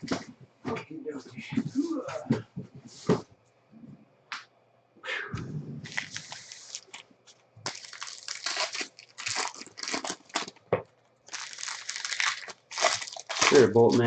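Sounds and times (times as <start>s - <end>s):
card pack wrappers tearing and crinkling: 5.8s - 10.7s, 11.3s - 14.0s.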